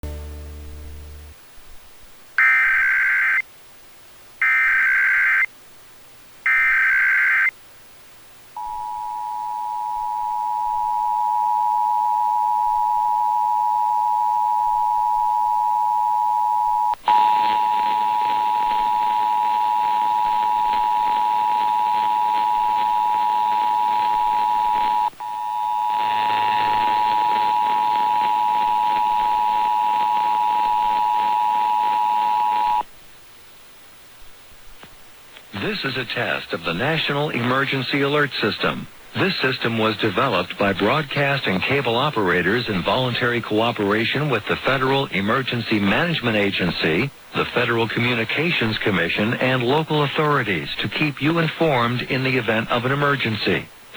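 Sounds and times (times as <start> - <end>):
harsh buzzing distortion: 0.0 - 3.4, 14.4 - 32.9.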